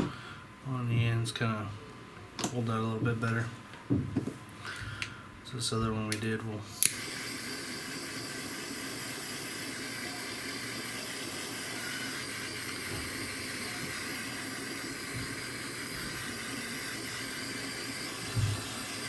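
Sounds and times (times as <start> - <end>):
heat gun blowing: 6.7 - 19.0.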